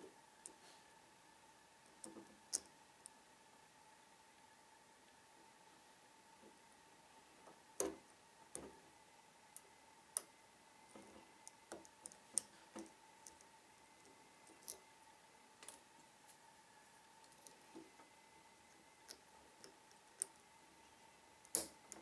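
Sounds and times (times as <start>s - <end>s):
faint steady hum: 0.0s - 22.0s.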